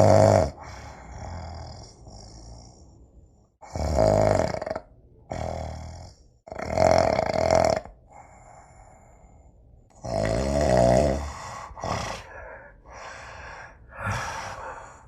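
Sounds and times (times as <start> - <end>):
person snoring: 0.0 - 3.0, 3.6 - 8.8, 9.9 - 15.0
quiet breathing: 0.5 - 3.6, 8.0 - 10.0, 11.0 - 15.0.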